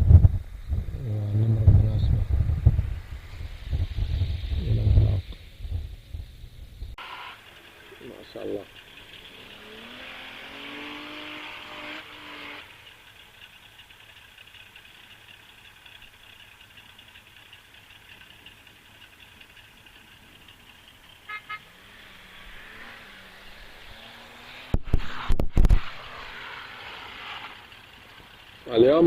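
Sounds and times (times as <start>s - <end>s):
distant off-road engine revving: 0.0s - 29.0s
short horn toots: 21.2s - 21.7s.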